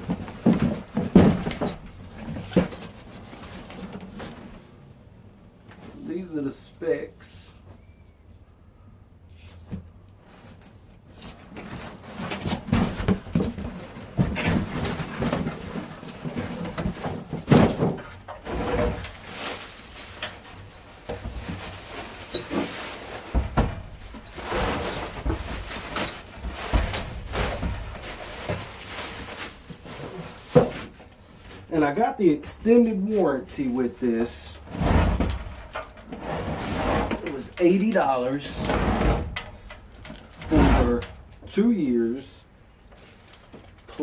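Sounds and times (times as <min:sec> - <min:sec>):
knocks and clunks of parts: 0:00.0 - 0:04.6, 0:11.4 - 0:19.2, 0:20.1 - 0:31.7, 0:34.6 - 0:41.6
packaging rustling: 0:18.9 - 0:31.7.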